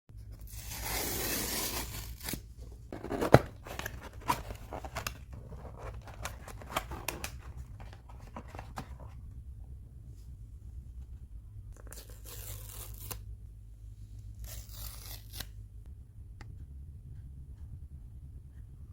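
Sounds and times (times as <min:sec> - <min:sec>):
packaging rustling and tearing: 0:03.0 - 0:09.2.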